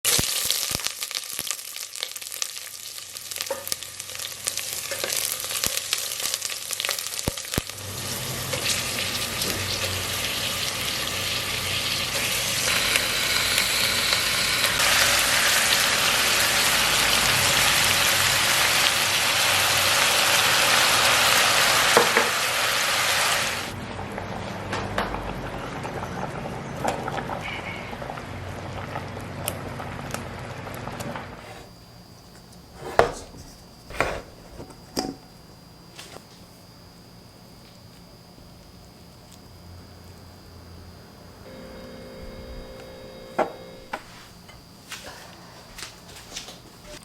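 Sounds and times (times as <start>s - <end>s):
food sizzling in pan: 0.1s - 23.8s.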